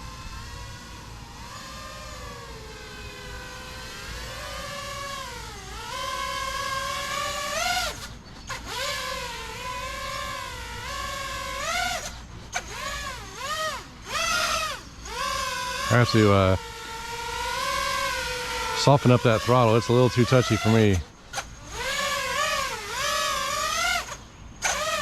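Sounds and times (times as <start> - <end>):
drone motors whining: 0.0 - 25.0.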